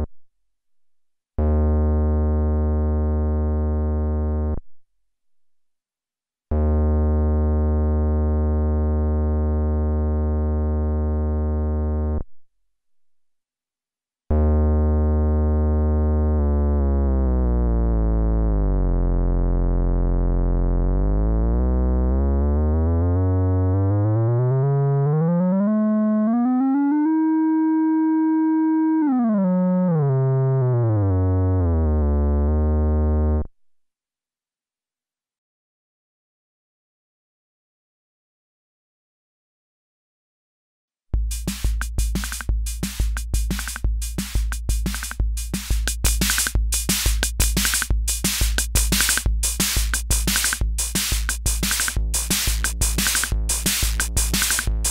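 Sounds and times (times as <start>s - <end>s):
analog bass synth notes: 1.4s - 4.6s, 6.5s - 12.3s, 14.3s - 33.5s, 41.2s - 54.9s.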